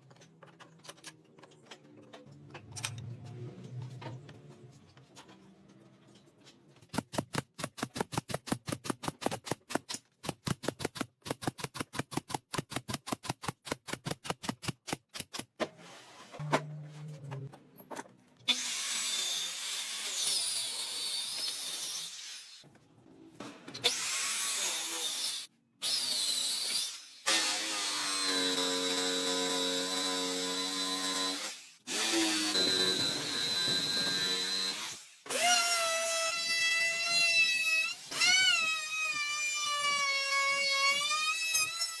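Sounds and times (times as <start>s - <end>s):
power tool whining: 27.3s - 36.3s.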